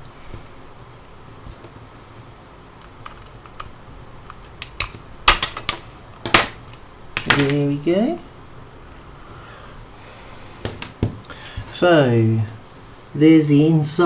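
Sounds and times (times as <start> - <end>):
plastic clips snapping: 4.3 - 7.6.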